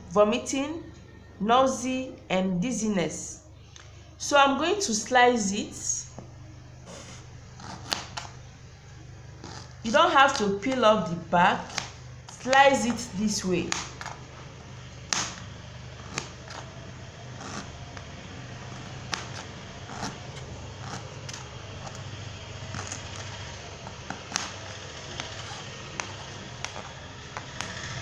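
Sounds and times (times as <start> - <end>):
steady low hum: 0.0 - 28.0
knife slicing ginger: 6.9 - 8.4, 11.5 - 28.0.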